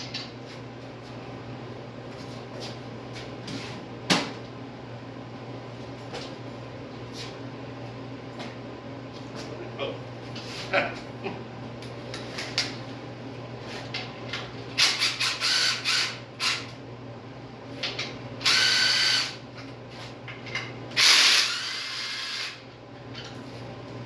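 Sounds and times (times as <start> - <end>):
power tool spinning: 14.8 - 16.7, 18.4 - 19.4, 21.0 - 22.6.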